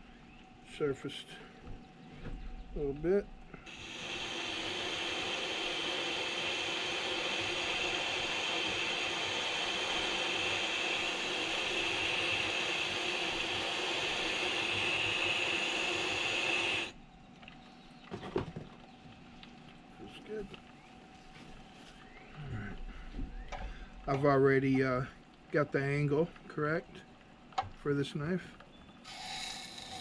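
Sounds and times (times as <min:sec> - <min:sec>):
grinding stone gritty hiss: 0:03.6 - 0:17.0, 0:29.0 - 0:30.0.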